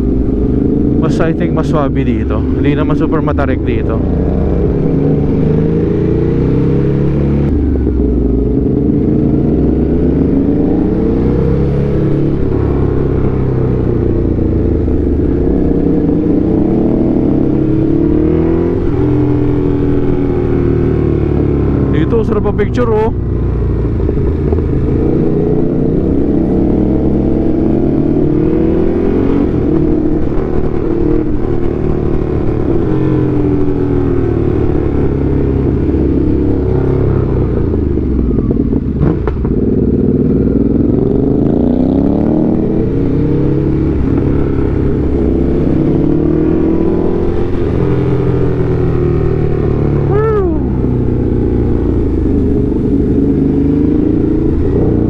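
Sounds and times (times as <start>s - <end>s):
motorcycle engine revving: 0.0s - 55.0s.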